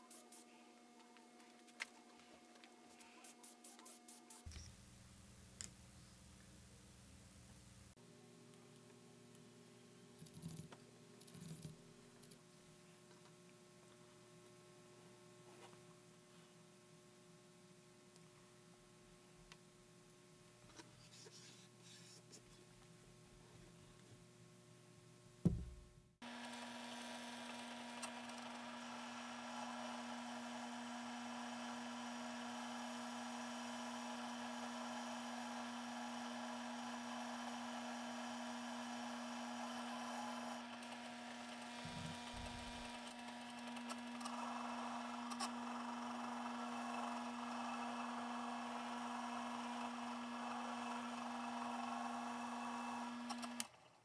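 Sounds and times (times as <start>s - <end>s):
knock: 25.4s - 25.9s.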